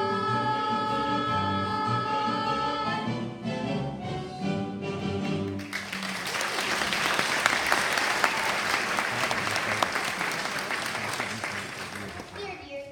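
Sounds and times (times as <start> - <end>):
audience applause: 5.5 - 12.6.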